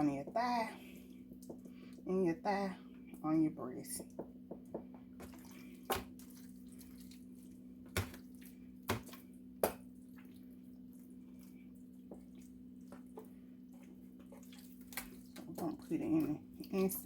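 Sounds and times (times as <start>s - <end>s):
hands squishing raw chicken: 5.2s - 16.7s.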